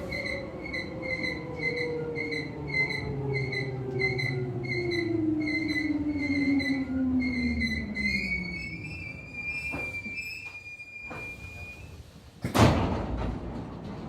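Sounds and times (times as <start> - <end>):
high brake squeal: 0.0 - 12.1
train motors whining: 0.0 - 12.4
train doors thunk: 9.4 - 14.0.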